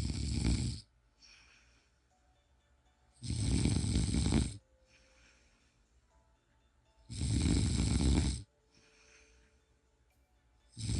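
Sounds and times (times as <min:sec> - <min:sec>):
person snoring: 0:00.0 - 0:01.5, 0:03.2 - 0:04.6, 0:07.1 - 0:09.2.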